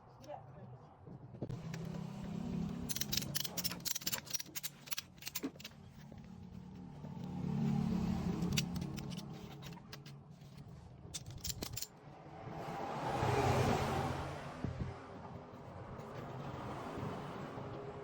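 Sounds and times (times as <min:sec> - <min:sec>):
metal tools clinking: 0:02.8 - 0:06.2, 0:08.4 - 0:12.0.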